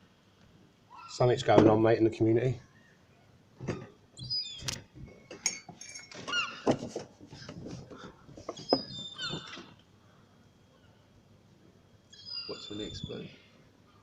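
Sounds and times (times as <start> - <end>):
seagulls calling: 7.4 - 9.8, 12.2 - 13.3.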